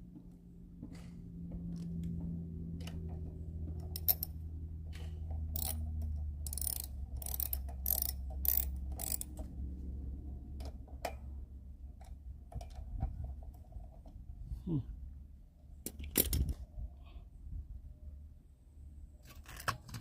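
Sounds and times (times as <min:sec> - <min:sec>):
hand tools clicking and scraping: 0:02.8 - 0:09.5.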